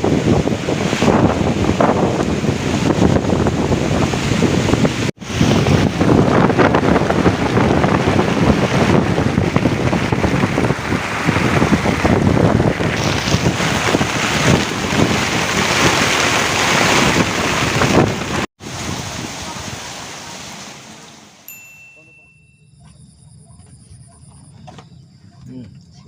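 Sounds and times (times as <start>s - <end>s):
wind buffeting microphone: 0.0s - 20.4s
rough splashing water: 4.0s - 21.6s.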